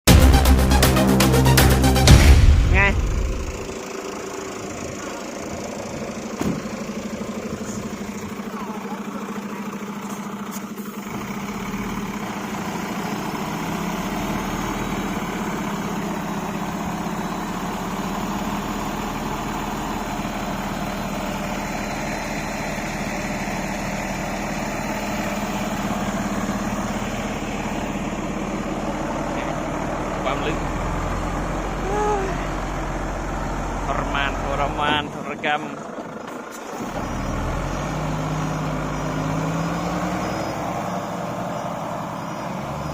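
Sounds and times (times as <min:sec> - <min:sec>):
diesel truck engine running: 0:00.0 - 0:42.9
short knock: 0:06.4 - 0:06.7.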